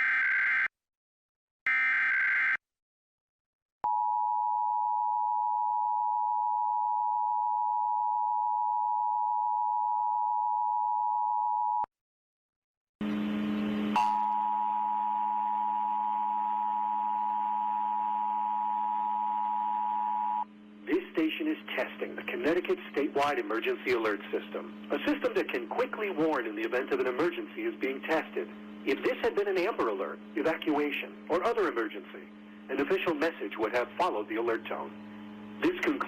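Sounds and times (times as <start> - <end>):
two-tone attention signal: 14.0 - 20.5.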